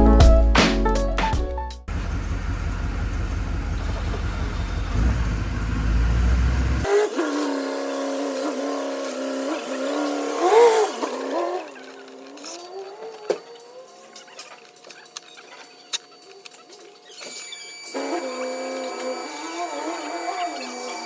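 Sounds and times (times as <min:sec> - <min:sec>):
car engine running: 0:01.9 - 0:06.9.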